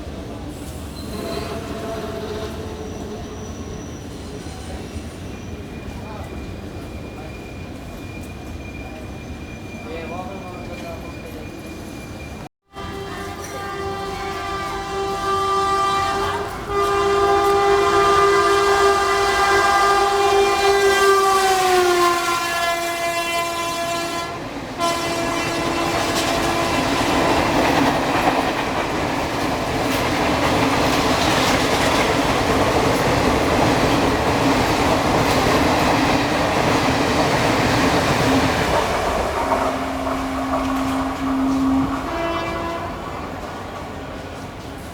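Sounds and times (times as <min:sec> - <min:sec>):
train coaches rolling clatter: 0:00.0 - 0:44.9
locomotive air horn: 0:01.1 - 0:03.6, 0:12.7 - 0:27.4, 0:39.7 - 0:43.1.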